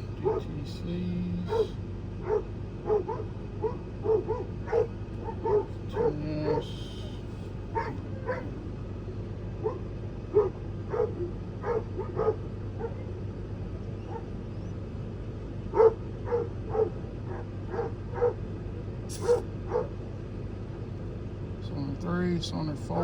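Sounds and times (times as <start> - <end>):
dog barking: 0.0 - 0.6, 1.5 - 8.6, 9.6 - 13.2, 13.9 - 14.7, 15.7 - 18.5, 19.1 - 20.0
steady low hum: 0.0 - 23.0.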